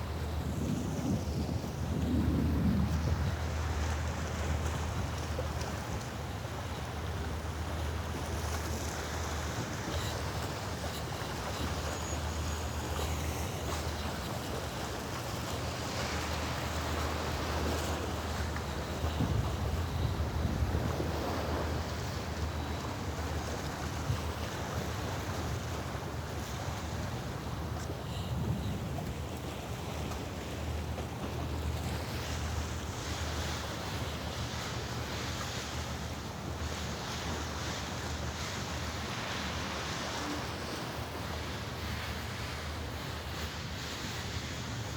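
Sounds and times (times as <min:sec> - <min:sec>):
wind buffeting microphone: 0:00.0 - 0:05.6
wind rumbling on microphone: 0:00.0 - 0:35.1
sea waves washing in: 0:00.0 - 0:44.9.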